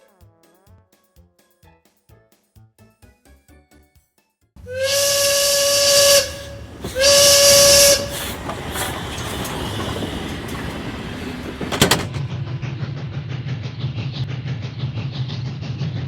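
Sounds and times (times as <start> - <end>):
steady rumbling: 4.6 - 14.3
loud whistle blasts: 4.7 - 8.9
heavy hissing: 4.7 - 12.3
short clatter: 6.3 - 12.4.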